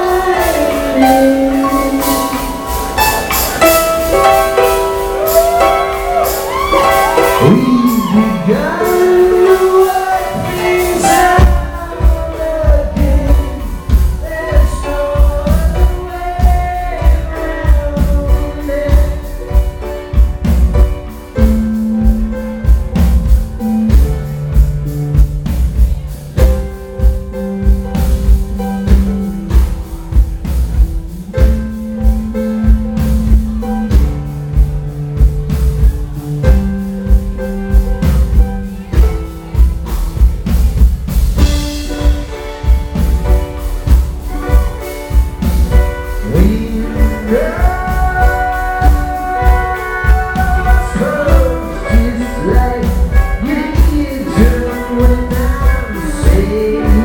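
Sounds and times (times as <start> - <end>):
man singing: 0.0 - 3.5, 5.2 - 24.6, 44.2 - 57.0
bass notes: 0.0 - 57.0
drum beat: 0.0 - 57.0
rock band playing: 0.0 - 57.0.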